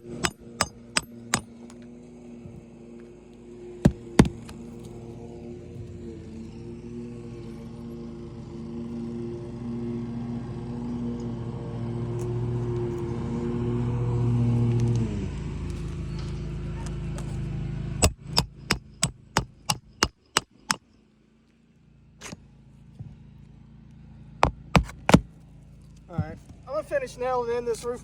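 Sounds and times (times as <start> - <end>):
hammer driving nail into shingles: 0.0 - 1.6, 3.8 - 4.6, 18.0 - 20.8, 24.4 - 25.3
motor hum winding down: 0.0 - 20.0.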